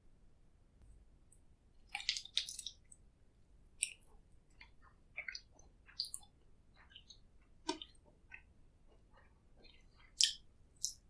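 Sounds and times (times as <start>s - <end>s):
close chewing mouth sounds: 1.9s - 3.0s, 3.8s - 11.0s.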